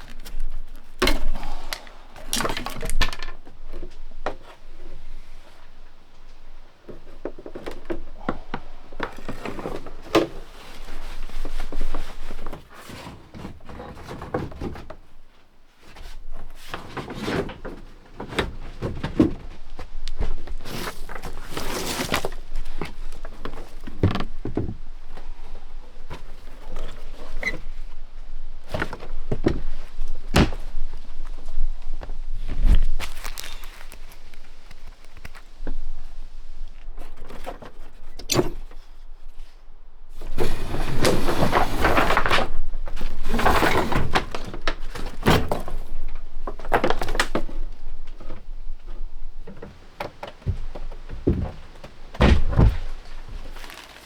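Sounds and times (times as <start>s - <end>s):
knocks and scraping in boat hull: 15.9s - 24.9s, 40.1s - 54.0s
loud thuds: 49.5s - 53.6s.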